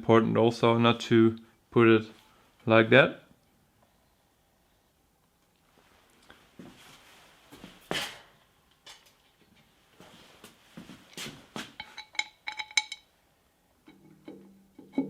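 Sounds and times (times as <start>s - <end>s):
ringing metallic clinks: 11.8s - 13.1s.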